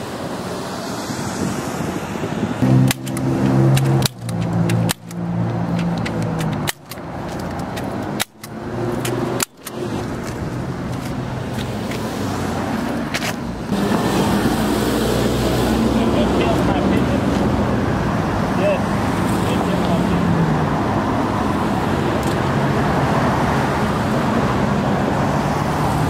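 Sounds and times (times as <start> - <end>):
street traffic: 0.0 - 26.0
sharp clicks: 2.7 - 10.4.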